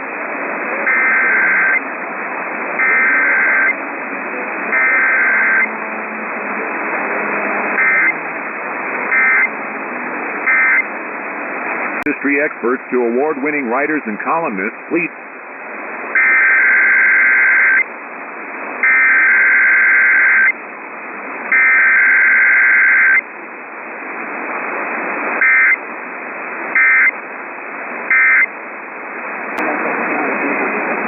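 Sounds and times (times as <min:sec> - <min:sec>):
radio hiss: 0:00.0 - 0:31.0
two-tone buzzing data bursts: 0:00.9 - 0:01.8, 0:02.8 - 0:03.8, 0:04.7 - 0:05.7, 0:07.8 - 0:08.2, 0:09.1 - 0:09.5, 0:10.4 - 0:10.8, 0:16.2 - 0:17.9, 0:18.8 - 0:20.6, 0:21.5 - 0:23.2, 0:25.4 - 0:25.8, 0:26.8 - 0:27.2, 0:28.1 - 0:28.5.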